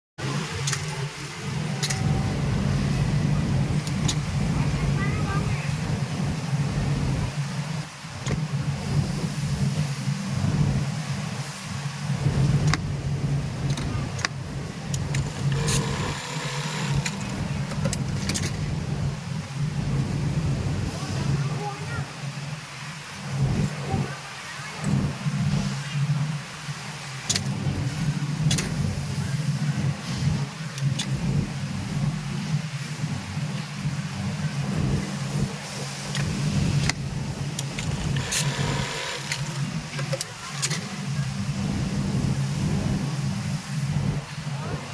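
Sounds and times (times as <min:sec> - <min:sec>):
sewing machine humming: 0:14.9 - 0:19.0, 0:37.7 - 0:40.2.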